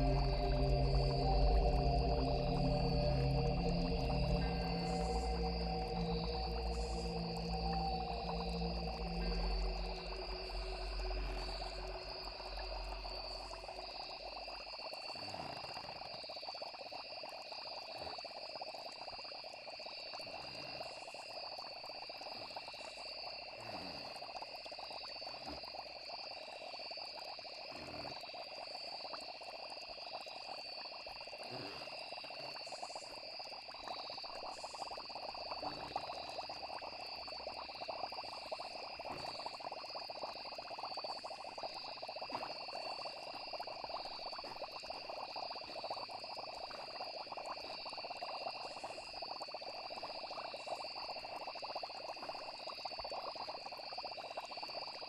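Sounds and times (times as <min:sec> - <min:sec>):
low drone: 0:00.0 - 0:14.7
frogs croaking: 0:00.0 - 0:55.0
insects chirring: 0:00.0 - 0:55.0.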